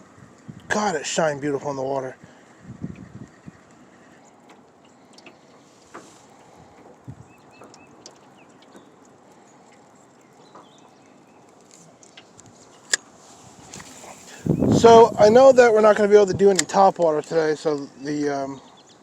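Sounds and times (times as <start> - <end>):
faint wind: 0.0 - 19.0
small bird chirping: 13.8 - 14.8.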